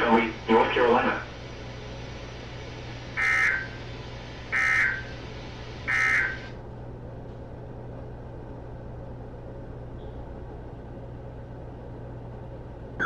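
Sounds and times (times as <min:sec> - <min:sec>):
radio background hiss: 0:00.0 - 0:06.6
low hum: 0:00.0 - 0:13.0.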